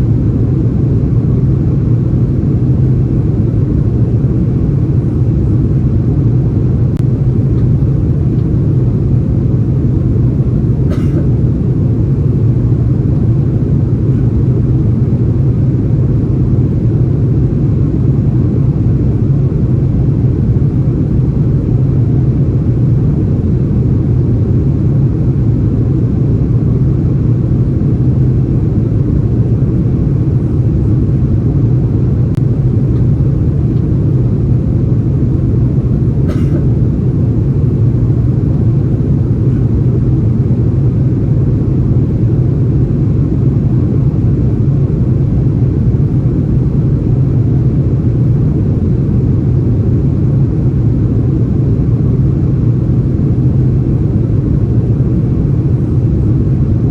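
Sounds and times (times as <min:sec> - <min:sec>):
airliner cabin engine rumble: 0:00.0 - 0:56.9.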